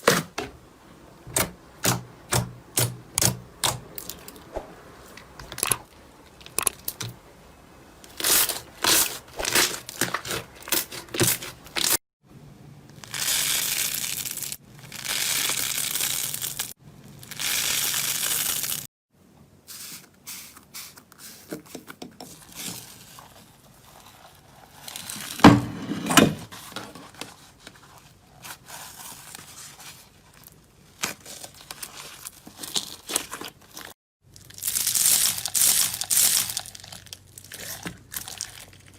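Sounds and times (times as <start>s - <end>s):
slime crackling and popping: 13.0s - 18.8s, 34.4s - 38.9s.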